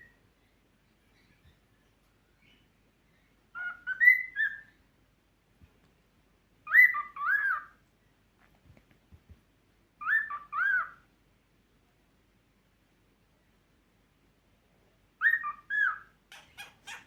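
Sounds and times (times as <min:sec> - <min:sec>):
cockatiel whistling: 0:03.6 - 0:04.7, 0:06.6 - 0:07.8, 0:10.0 - 0:11.0, 0:15.2 - 0:17.0.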